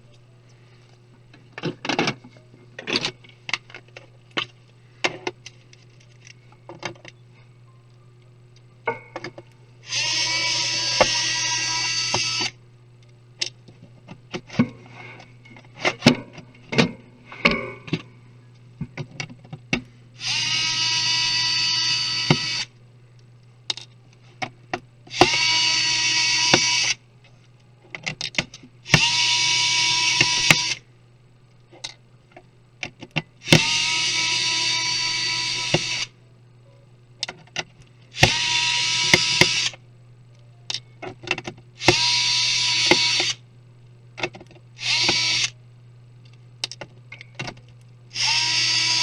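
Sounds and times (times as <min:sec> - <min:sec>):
electric screwdriver whining: 0:09.8 - 0:12.6, 0:20.2 - 0:22.7, 0:25.1 - 0:27.0, 0:28.9 - 0:30.8, 0:33.4 - 0:36.1, 0:38.2 - 0:39.8, 0:41.8 - 0:43.4, 0:44.8 - 0:45.6, 0:48.1 - 0:49.0.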